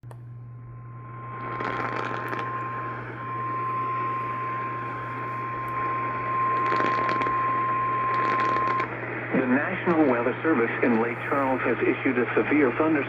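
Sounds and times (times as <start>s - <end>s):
interference crackles: 0.0s - 13.0s
low hum: 0.0s - 13.0s
emergency alert tone: 0.8s - 9.0s
radio static hiss: 0.8s - 13.0s.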